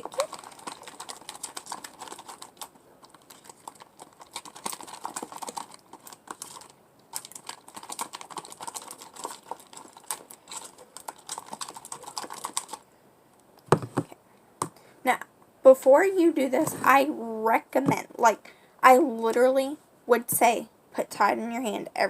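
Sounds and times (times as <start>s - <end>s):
spoon stirring sticky slime: 0.0s - 12.8s.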